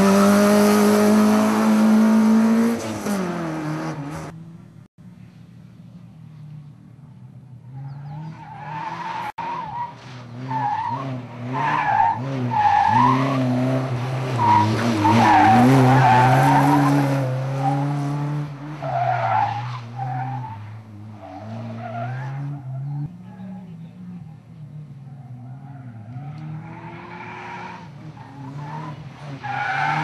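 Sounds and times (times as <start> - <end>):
rally car engine revving: 0.0 - 4.6.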